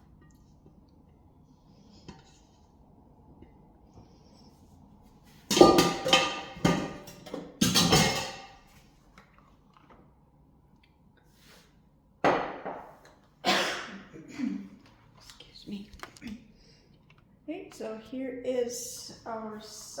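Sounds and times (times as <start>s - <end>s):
dishes clinking and clattering: 5.5s - 8.7s.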